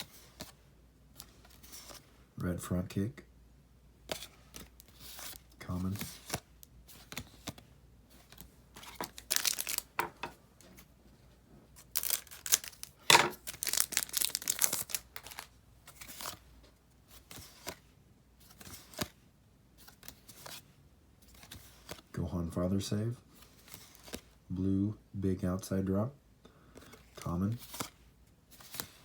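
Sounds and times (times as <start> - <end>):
foil wrapper tearing and crinkling: 8.9 - 10.0, 11.8 - 15.5.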